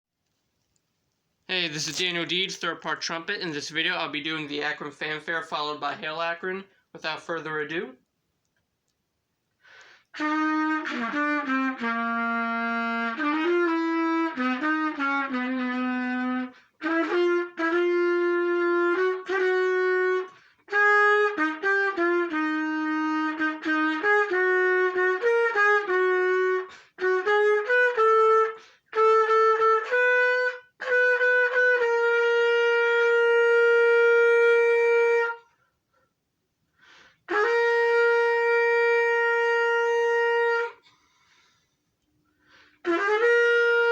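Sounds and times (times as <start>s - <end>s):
solo trumpet playing: 10.1s - 35.6s, 37.2s - 40.9s, 42.8s - 43.9s.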